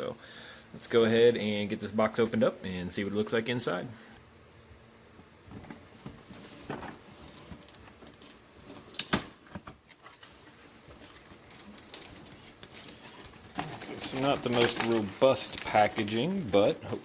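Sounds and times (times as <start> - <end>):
cardboard box rustling: 9.9 - 17.0.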